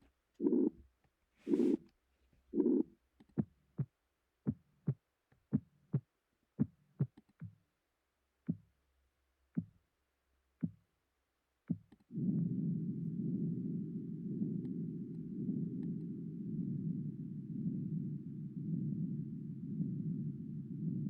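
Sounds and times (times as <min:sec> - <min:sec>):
heartbeat-like synthesized thumps: 0:03.4 - 0:03.9, 0:04.5 - 0:07.6, 0:09.6 - 0:09.8, 0:11.7 - 0:12.8.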